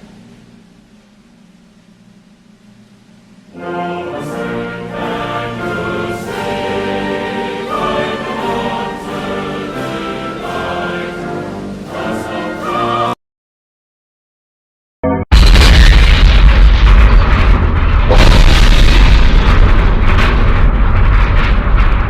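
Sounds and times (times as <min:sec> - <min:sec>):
choir singing with instruments: 0:03.5 - 0:13.2.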